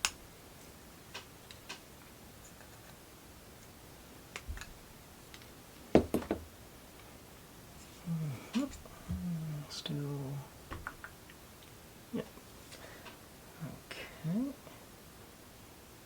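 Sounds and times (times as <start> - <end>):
loud knock: 6.0 - 6.5.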